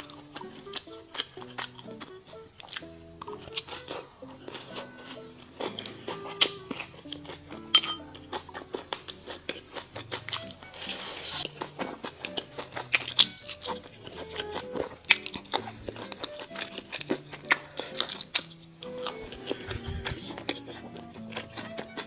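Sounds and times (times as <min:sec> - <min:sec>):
crunching and chewing food: 0:00.0 - 0:22.0
soft background music: 0:00.0 - 0:22.0.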